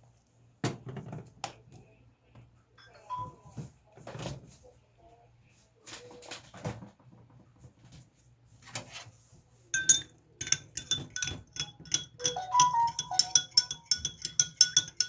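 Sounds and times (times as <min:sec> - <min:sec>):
spoon clinking in a glass: 0:09.8 - 0:15.0.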